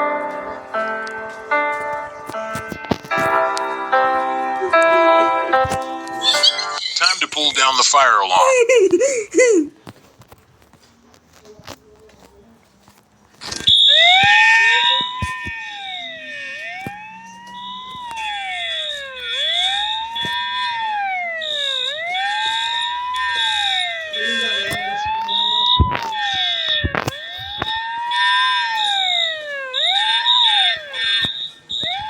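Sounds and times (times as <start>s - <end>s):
high beeping tone: 4.8s - 8.3s, 13.4s - 32.0s
fire alarm wailing siren: 13.4s - 32.0s.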